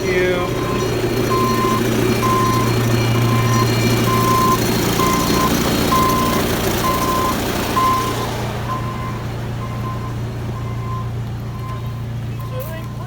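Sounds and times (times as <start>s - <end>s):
engine droning: 0.0s - 13.0s
reversing alarm beeping: 0.0s - 13.0s.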